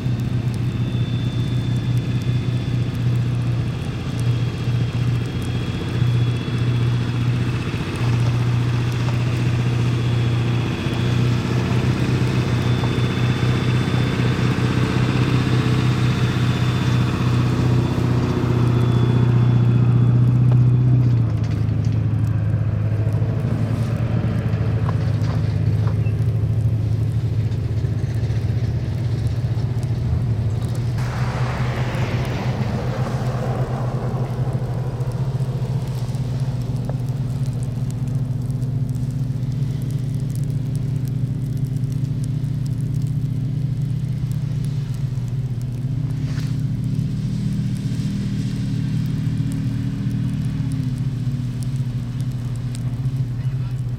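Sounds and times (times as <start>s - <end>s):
vehicle engine humming: 0.0s - 53.9s
hiss: 31.0s - 38.3s, 43.7s - 53.4s.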